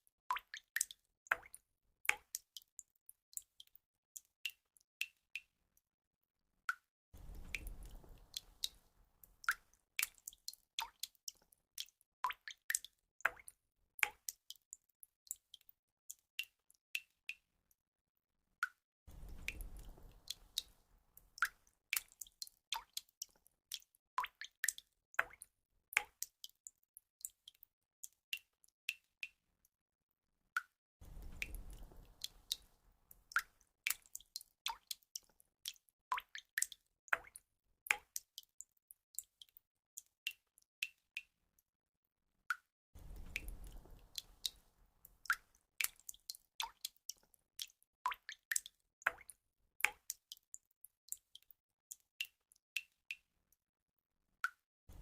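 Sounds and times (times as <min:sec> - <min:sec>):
water drops plopping: 0:36.1 - 0:38.3, 0:45.2 - 0:50.2.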